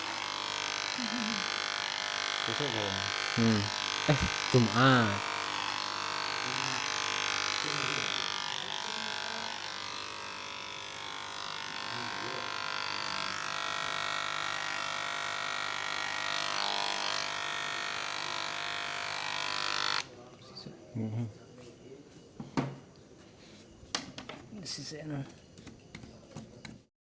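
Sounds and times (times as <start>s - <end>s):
electric hair clipper buzzing: 0.0s - 20.1s.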